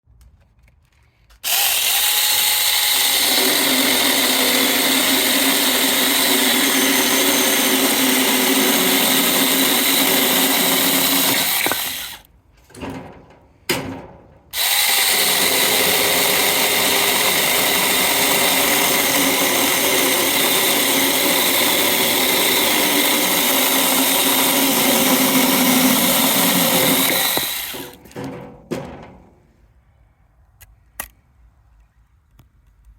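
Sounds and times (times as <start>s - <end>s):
battery chainsaw cutting wood: 1.4s - 12.3s, 14.6s - 28.0s.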